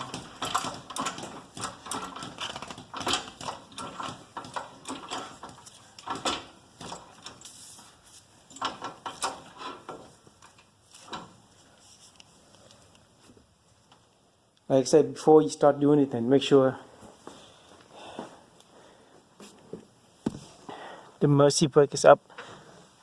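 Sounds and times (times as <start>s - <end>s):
car jack clicking and clunking: 0.0s - 7.6s, 8.5s - 11.4s.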